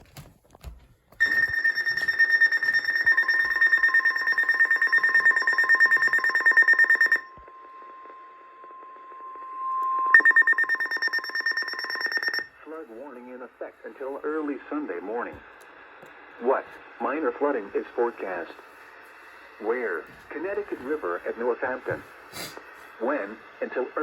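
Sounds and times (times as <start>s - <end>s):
rapid pulsing electronic alarm: 1.2s - 12.6s
steady one-pitch warning tone: 1.2s - 12.9s.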